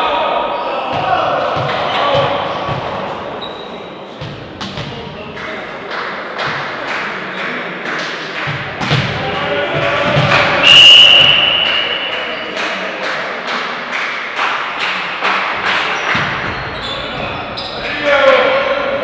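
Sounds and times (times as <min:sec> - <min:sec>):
ball bouncing on hall floor: 0:04.2 - 0:05.1, 0:08.4 - 0:11.8, 0:15.6 - 0:17.4
referee whistle blast: 0:10.6 - 0:12.1.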